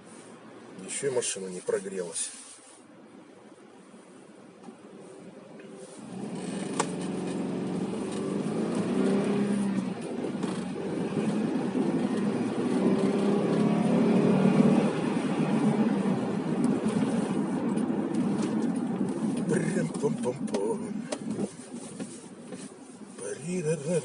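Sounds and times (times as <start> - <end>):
road noise inside car: 0.0 - 24.0
car engine accelerating: 5.6 - 24.0.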